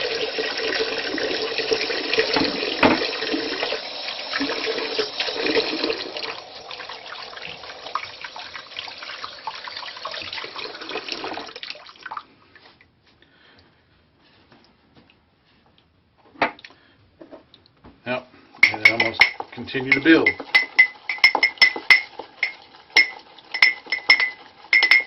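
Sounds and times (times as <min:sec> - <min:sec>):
tap water running into sink: 0:00.0 - 0:12.2, 0:18.6 - 0:25.0.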